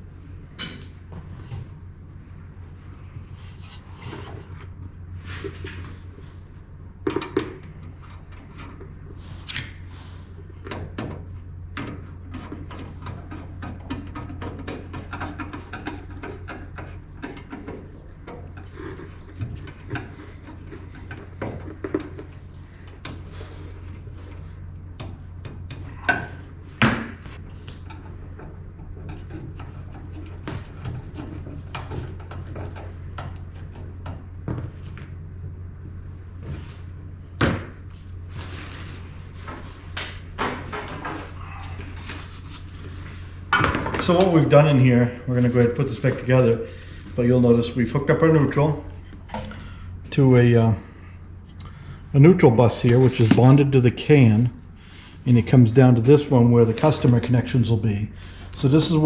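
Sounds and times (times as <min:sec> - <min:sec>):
steady low hum: 0:00.0 - 0:59.0
tools knocking and clicking on metal: 0:11.8 - 0:18.4.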